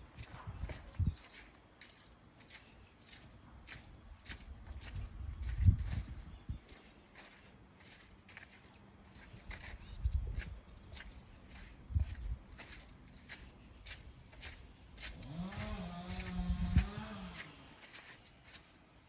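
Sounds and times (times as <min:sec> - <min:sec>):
footsteps on woodland path: 0:00.0 - 0:19.0
small birds chirping: 0:00.0 - 0:19.0.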